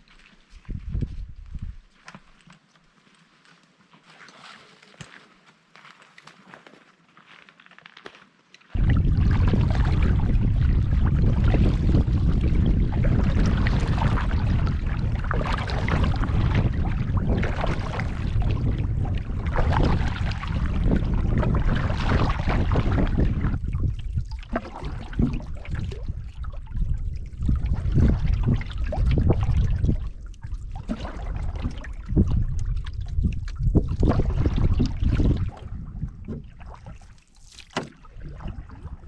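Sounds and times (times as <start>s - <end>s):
deep steady rumble: 8.8s - 36.8s
water splashing around canoe: 8.8s - 39.0s.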